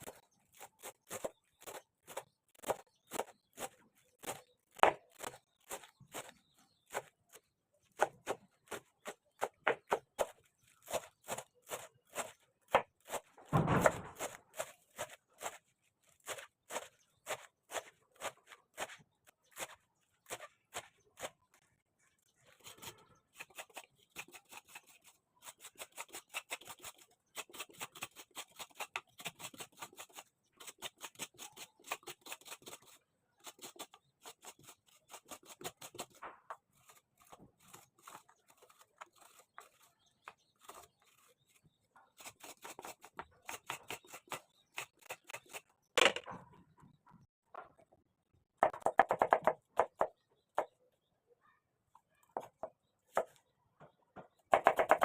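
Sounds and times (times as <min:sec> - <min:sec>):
loud knocks: 0:13.5 - 0:14.2.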